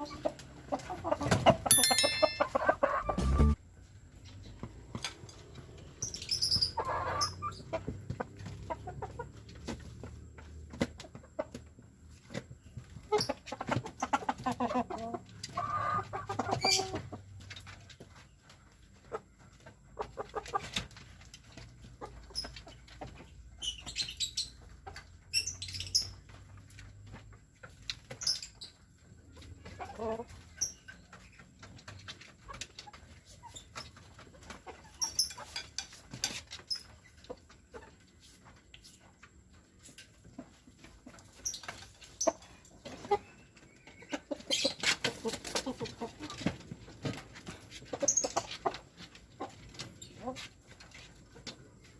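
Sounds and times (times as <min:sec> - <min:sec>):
chickens clucking: 0:00.0 - 0:51.9
short high chirps: 0:01.7 - 0:03.6.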